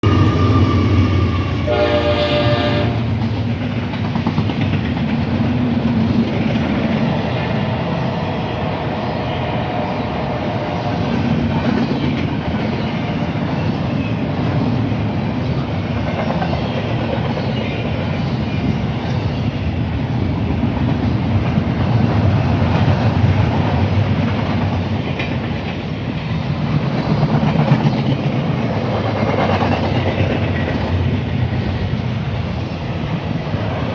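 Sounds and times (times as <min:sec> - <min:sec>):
train horn blast: 0:00.0 - 0:03.2
train cars rumbling past: 0:00.0 - 0:33.9.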